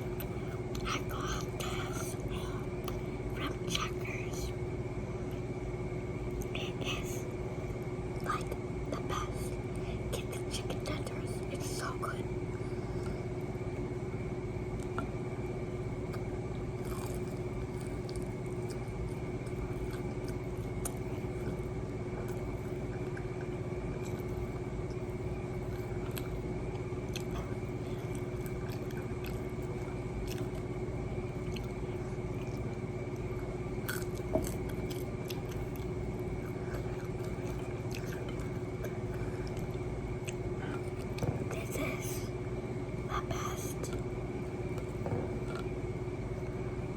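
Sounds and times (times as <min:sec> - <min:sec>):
background hum: 0:00.0 - 0:46.9
chewing crunchy food: 0:16.0 - 0:41.7, 0:43.7 - 0:46.6.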